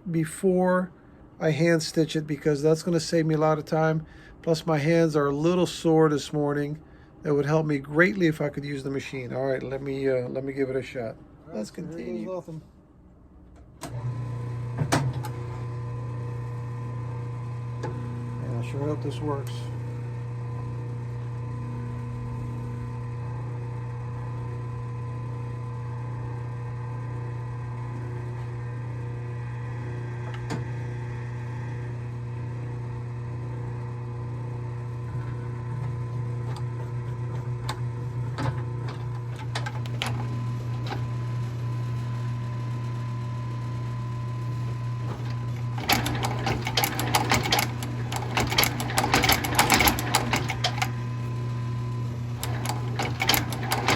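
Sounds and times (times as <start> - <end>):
machine humming: 38.6 - 53.9
machine clicks: 39.4 - 41.1, 45.1 - 51.1, 52.4 - 53.9
loud stitching clatter: 39.6 - 41.0, 45.1 - 51.0, 52.4 - 53.9.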